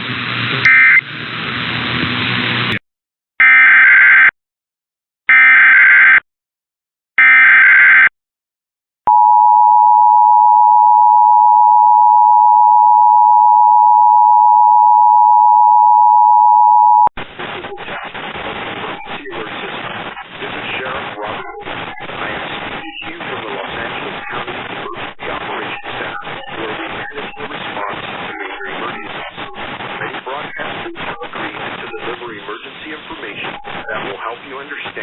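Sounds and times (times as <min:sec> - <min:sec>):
noisy broadcast audio: 0:00.0 - 0:02.8, 0:16.7 - 0:35.0.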